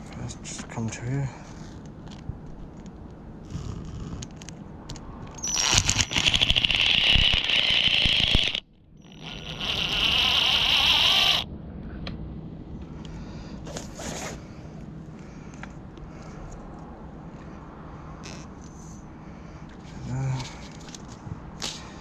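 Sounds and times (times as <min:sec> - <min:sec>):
power drill running: 0:05.4 - 0:11.4.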